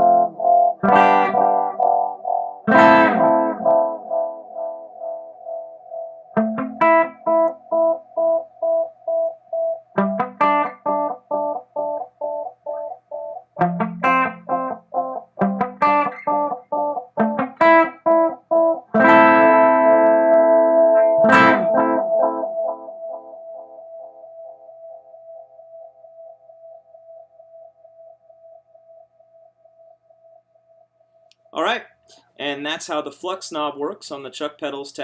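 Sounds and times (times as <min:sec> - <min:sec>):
strummed guitar chord: 0:00.0 - 0:05.6, 0:13.6 - 0:23.8
electric guitar with delay echoes: 0:00.0 - 0:29.0.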